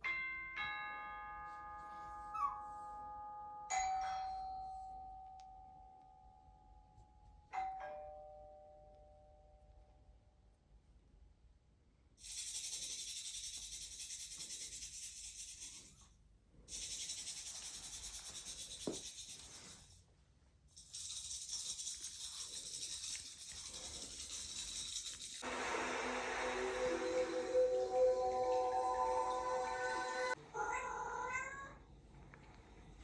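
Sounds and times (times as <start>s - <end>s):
high hissing rattle: 12.2s - 16.0s, 16.7s - 20.0s, 20.8s - 25.6s
music: 25.5s - 30.4s.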